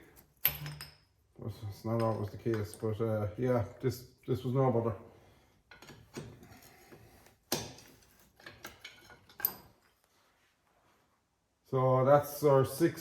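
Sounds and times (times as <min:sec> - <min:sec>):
metal parts knocking and clinking: 0:00.2 - 0:01.2, 0:01.8 - 0:03.3, 0:05.7 - 0:06.8, 0:07.5 - 0:09.9.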